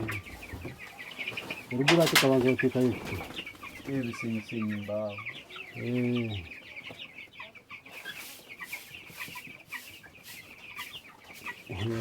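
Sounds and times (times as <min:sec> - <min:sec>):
chicks peeping: 0:00.0 - 0:12.0.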